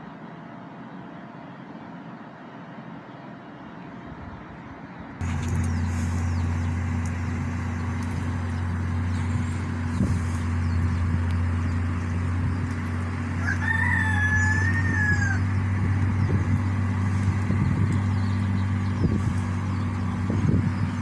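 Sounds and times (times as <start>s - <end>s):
low mechanical hum: 0.0s - 21.0s
rooster crowing: 6.5s - 17.6s.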